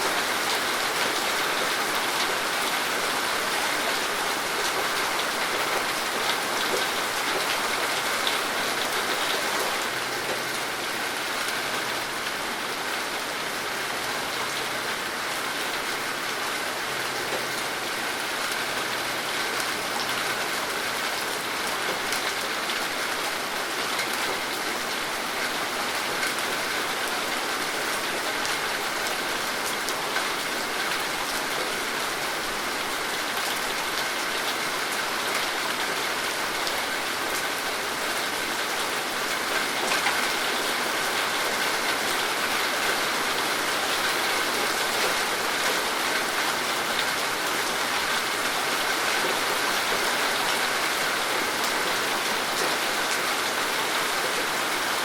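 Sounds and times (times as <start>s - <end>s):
steady rain hiss: 0.0s - 55.0s.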